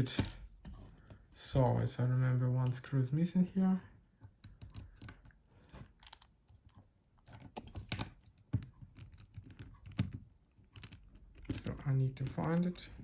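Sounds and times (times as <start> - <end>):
small clicks and taps of tools: 4.2 - 12.7.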